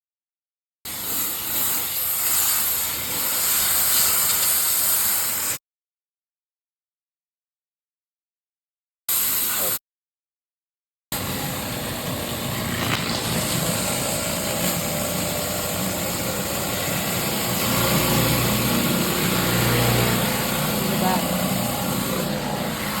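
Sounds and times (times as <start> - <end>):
pressure washer engine hum: 0.9 - 5.5, 11.2 - 23.0
high hiss of water spray: 0.9 - 5.6, 9.1 - 9.8, 11.2 - 23.0.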